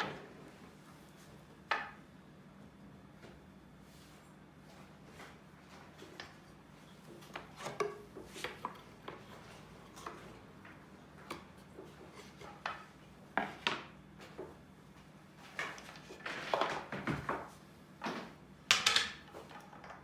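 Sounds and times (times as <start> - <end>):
wooden pieces knocking: 18.7 - 20.0.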